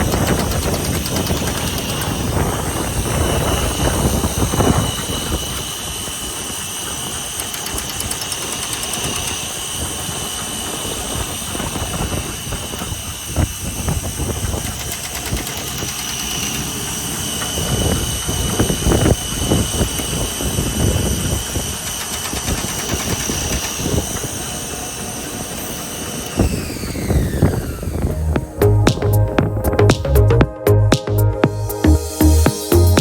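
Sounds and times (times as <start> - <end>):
drill-mortiser motor whine: 0.0 - 29.6
low machine rumble: 26.5 - 33.0.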